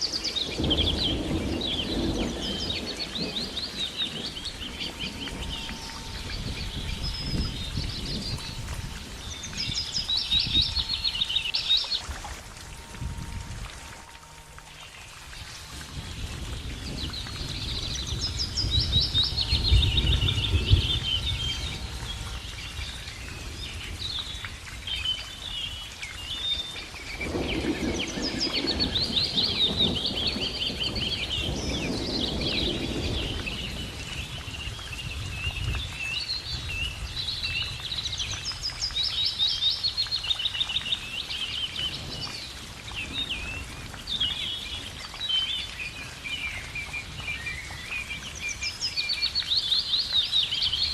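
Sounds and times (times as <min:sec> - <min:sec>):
songbirds singing: 0:00.0 - 0:50.9
low rumble: 0:03.6 - 0:24.0.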